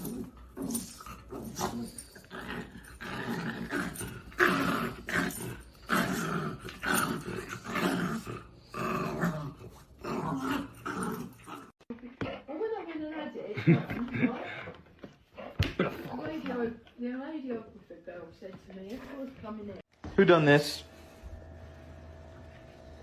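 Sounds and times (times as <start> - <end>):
dog growly grumbles: 0.0 - 11.8.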